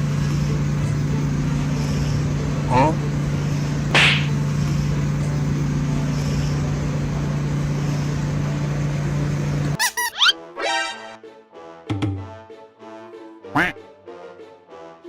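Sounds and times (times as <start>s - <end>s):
low machine hum: 0.0s - 9.8s.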